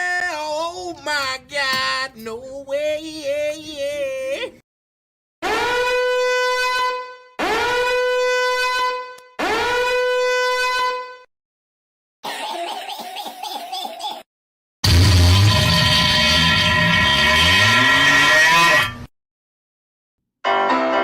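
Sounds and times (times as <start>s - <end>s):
horn long blasts: 5.4s - 11.2s, 14.8s - 19.1s.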